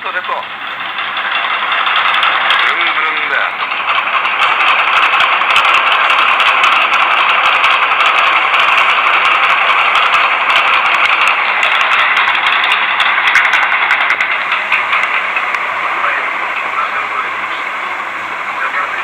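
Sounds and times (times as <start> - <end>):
ceiling fan rushing: 0.0 - 19.0
fan mount clicking and rattling: 3.6 - 15.7.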